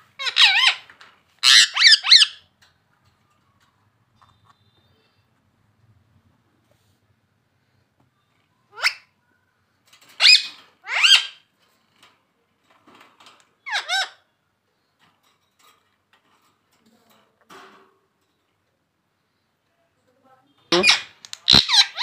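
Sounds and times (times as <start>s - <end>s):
parrot squawking: 0.2s - 2.4s, 8.7s - 9.1s, 10.2s - 11.4s, 13.6s - 14.2s, 20.7s - 22.0s.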